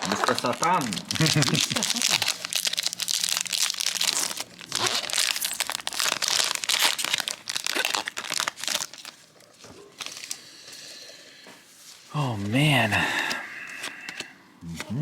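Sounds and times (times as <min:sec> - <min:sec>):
foil wrapper crinkling and tearing: 0:00.0 - 0:10.5.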